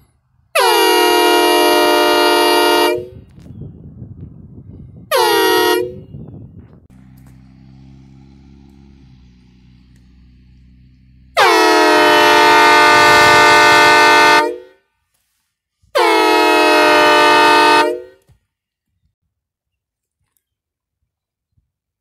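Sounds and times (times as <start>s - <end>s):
train horn blasts: 0.5s - 3.3s, 5.1s - 6.1s, 11.4s - 15.0s, 15.9s - 18.4s.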